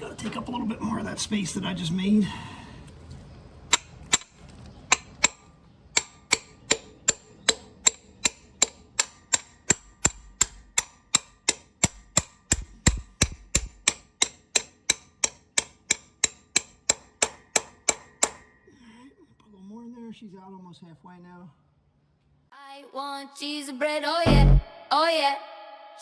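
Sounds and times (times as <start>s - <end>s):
hammer striking metal rod: 3.7s - 18.6s.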